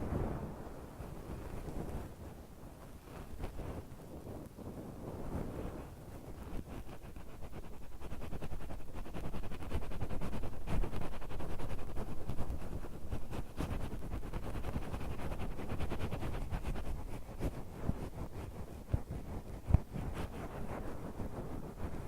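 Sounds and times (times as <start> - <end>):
ear pick scratching microphone: 5.1 - 22.0.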